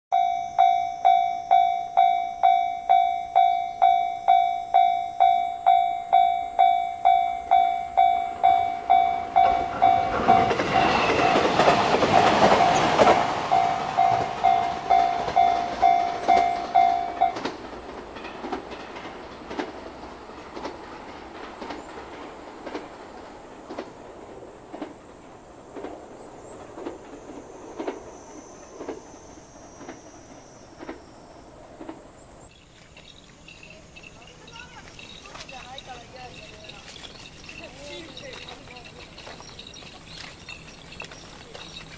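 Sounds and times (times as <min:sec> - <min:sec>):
level crossing bell ringing: 0:00.1 - 0:17.5, 0:33.0 - 0:41.9
electric train rumble: 0:00.1 - 0:41.9.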